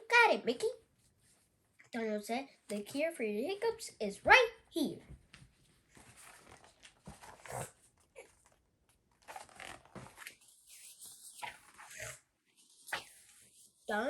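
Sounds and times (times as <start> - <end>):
book page rustling: 5.3 - 14.0.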